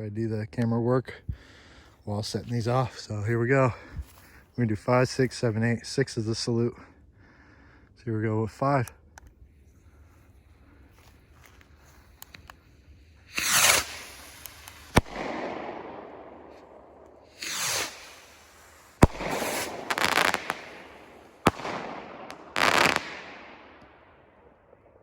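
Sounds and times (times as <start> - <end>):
firework rockets whooshing: 13.2 - 24.0
firework bangs echoing: 13.3 - 25.0.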